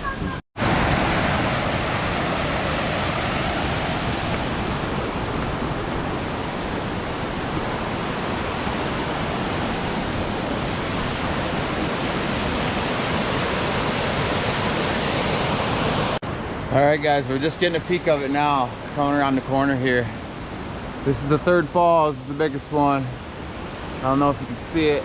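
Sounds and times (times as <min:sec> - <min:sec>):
fast-flowing river water: 0:00.6 - 0:16.2.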